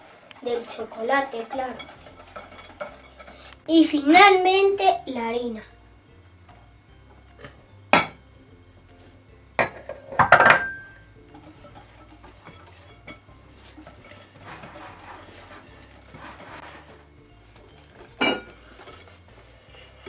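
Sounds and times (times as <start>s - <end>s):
spoon scraping batter: 0.0s - 3.7s, 11.3s - 20.0s
spoon clinking against bowl: 1.7s - 3.5s, 17.6s - 19.1s.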